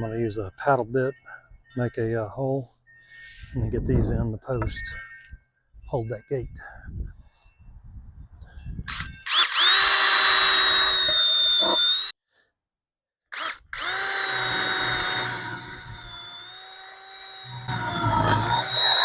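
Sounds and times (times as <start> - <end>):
power drill boring into wood: 8.9 - 12.2, 13.3 - 19.0.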